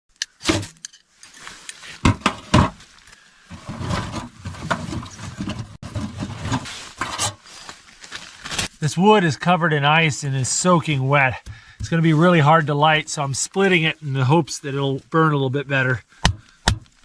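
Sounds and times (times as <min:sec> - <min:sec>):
rough rustling and rumbling: 0:00.4 - 0:14.4
splitting blows on wet firewood: 0:16.1 - 0:17.0.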